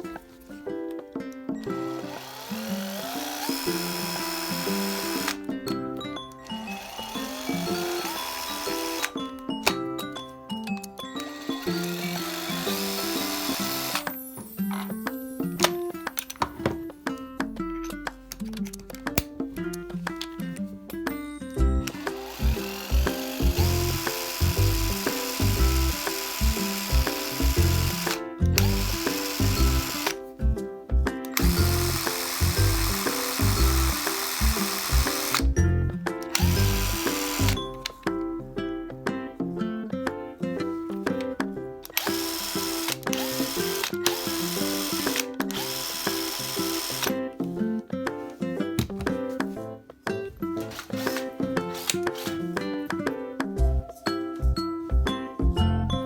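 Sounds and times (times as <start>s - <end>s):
background music with steady beat: 0.0s - 56.0s
power driver motor whine: 1.7s - 5.4s, 6.5s - 9.2s, 11.2s - 14.1s, 21.8s - 30.2s, 31.4s - 35.6s, 36.3s - 37.6s, 41.9s - 47.1s.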